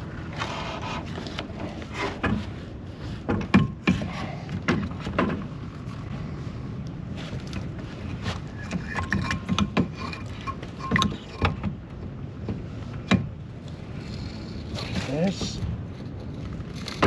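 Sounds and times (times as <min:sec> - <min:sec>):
steady low hum: 0:00.0 - 0:17.0
mount parts knocking and clicking: 0:08.6 - 0:11.8.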